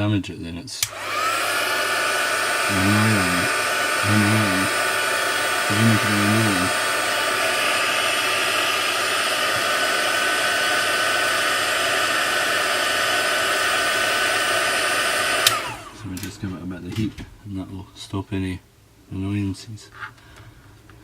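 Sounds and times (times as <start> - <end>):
hot-air blower hissing and whining: 0.8 - 16.9.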